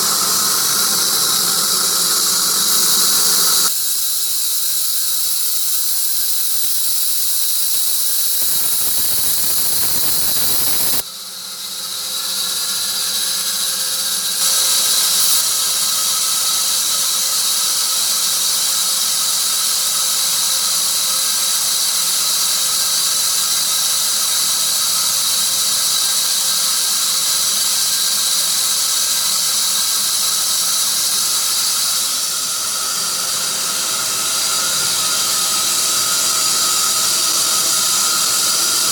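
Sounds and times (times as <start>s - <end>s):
saw blade cutting log: 29.3s - 38.9s.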